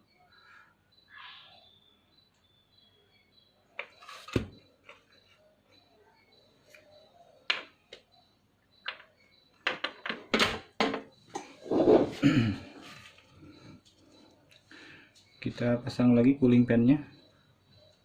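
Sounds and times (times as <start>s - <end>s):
small parts clicking and knocking: 8.8s - 11.5s.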